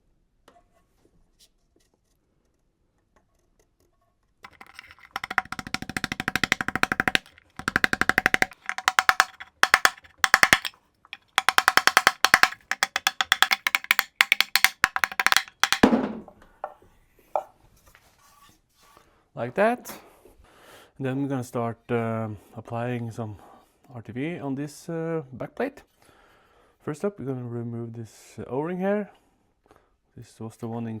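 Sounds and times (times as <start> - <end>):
rapid tapping on seal installer: 4.5 - 15.9.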